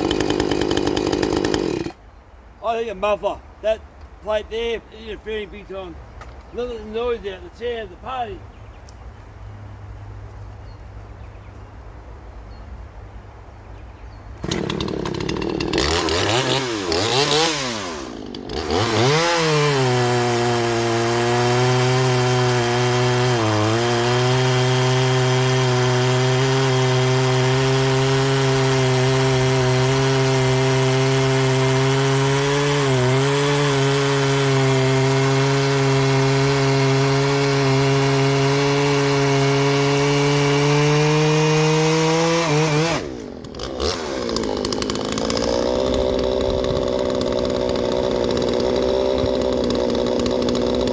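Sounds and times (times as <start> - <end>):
chainsaw idling and revving: 0.0 - 2.0, 14.4 - 50.9.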